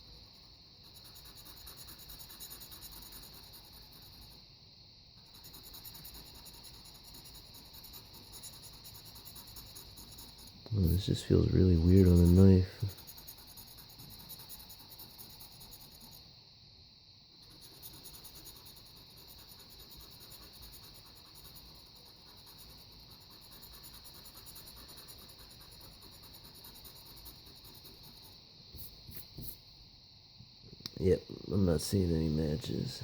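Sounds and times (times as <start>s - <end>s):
knife scratching a lottery ticket: 0.0s - 4.4s, 5.2s - 16.2s, 17.4s - 28.4s
steady high hiss: 10.3s - 13.0s, 26.1s - 33.0s.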